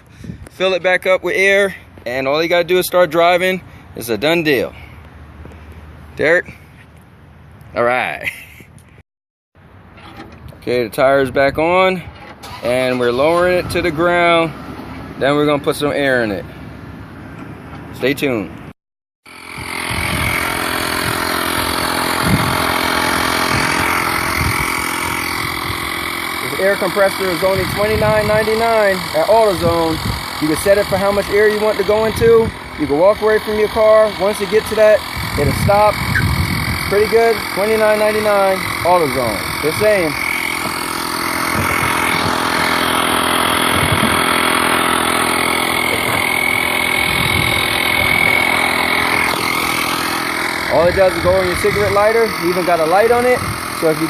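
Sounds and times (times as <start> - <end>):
air compressor droning: 9.9 - 18.4, 19.2 - 54.0.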